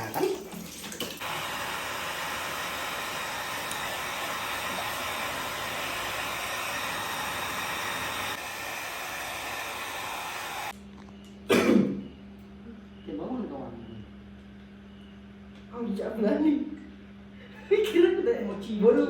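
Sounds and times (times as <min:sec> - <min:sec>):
hair dryer blowing: 0:01.2 - 0:10.8.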